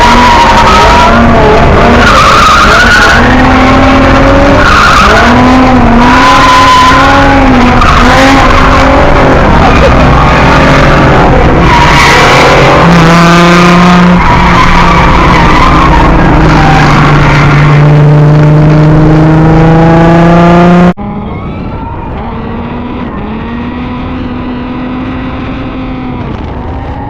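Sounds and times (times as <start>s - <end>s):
tyres squealing: 0.0s - 18.2s
car engine revving: 0.0s - 27.0s.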